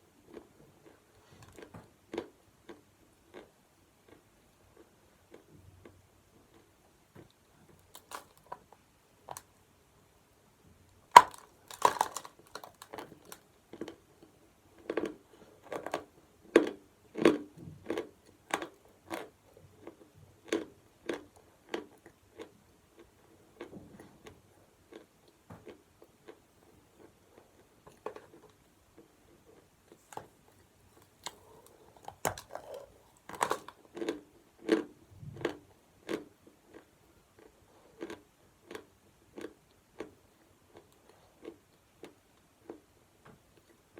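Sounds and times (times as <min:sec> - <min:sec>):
crunchy chewing: 0:11.2 - 0:24.3, 0:24.9 - 0:42.8.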